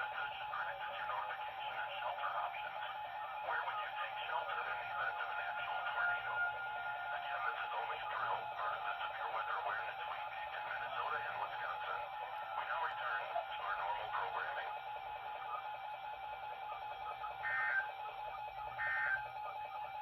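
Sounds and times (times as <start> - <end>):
radio voice and music: 0.0 - 18.0, 18.6 - 19.7
steady hum tone: 0.0 - 20.0
screeching data bursts: 17.3 - 18.0, 18.7 - 19.5.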